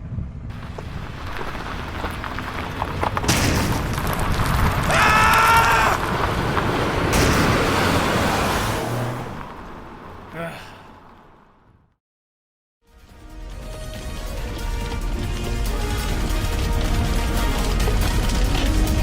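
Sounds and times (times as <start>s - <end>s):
explosion blast: 3.2s - 6.1s, 7.0s - 8.8s.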